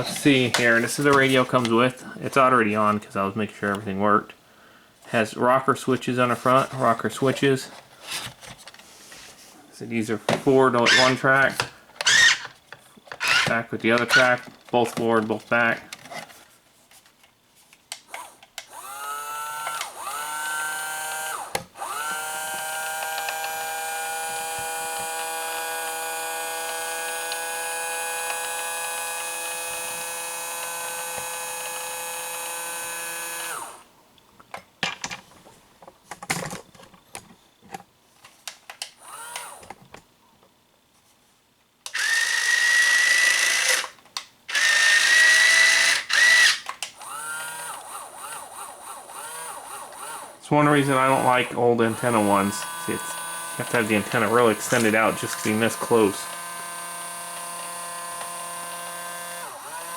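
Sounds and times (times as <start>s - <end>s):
electric motors whining: 18.1s - 33.8s, 39.0s - 39.7s, 42.0s - 43.9s, 44.5s - 59.9s.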